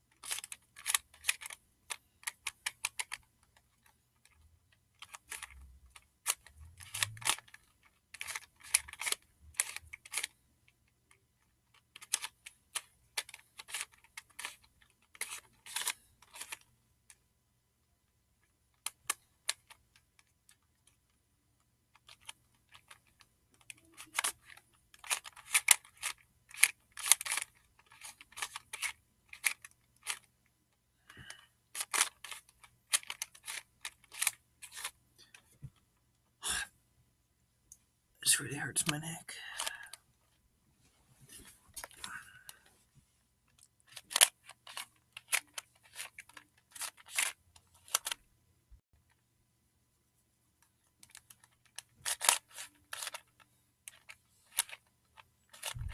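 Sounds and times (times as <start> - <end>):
puzzle cube clicking turns: 0.1 - 17.2, 18.4 - 21.2, 21.9 - 30.3, 31.0 - 35.9, 38.8 - 40.0, 41.7 - 42.6, 43.5 - 48.3, 50.6 - 55.9.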